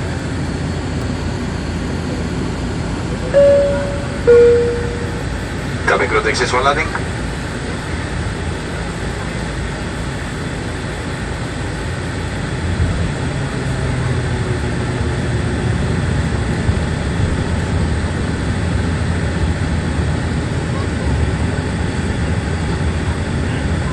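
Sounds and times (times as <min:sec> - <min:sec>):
turboprop engines droning: 0:00.0 - 0:23.9
low hum: 0:03.0 - 0:05.9.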